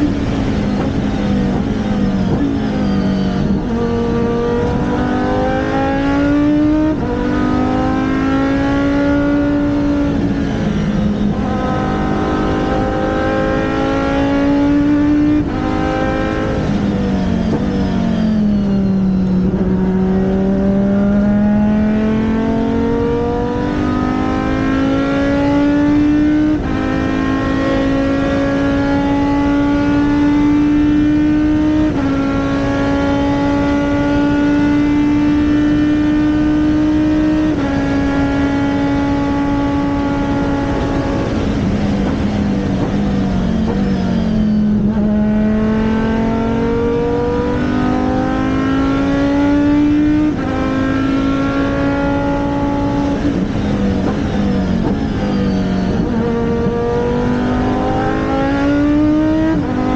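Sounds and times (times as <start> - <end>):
race car engine revving: 0.0 - 59.9.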